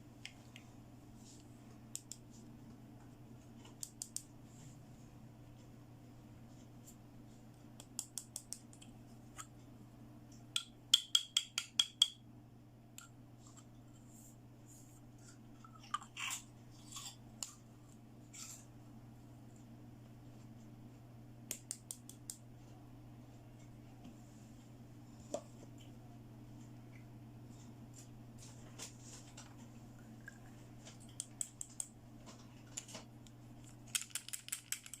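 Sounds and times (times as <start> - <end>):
plastic toy pieces clicking: 33.9 - 35.0.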